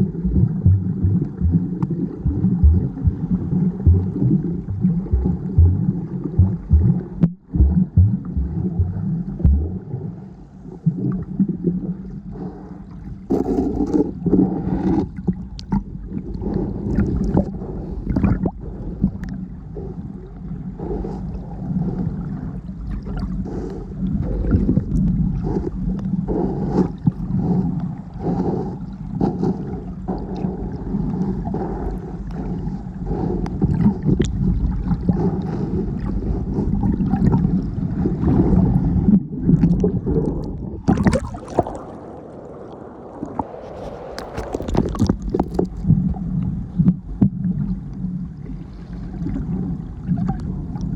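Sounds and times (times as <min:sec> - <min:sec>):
muffled underwater sloshing: 0:00.0 - 0:50.9
knocks and splashes: 0:39.4 - 0:41.9, 0:43.3 - 0:45.8.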